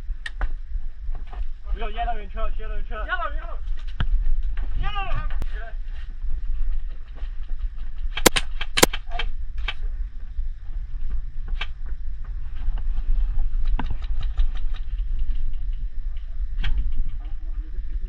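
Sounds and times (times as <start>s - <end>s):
steady low rumble: 0.0s - 18.0s
airsoft gunshots: 8.2s - 8.9s.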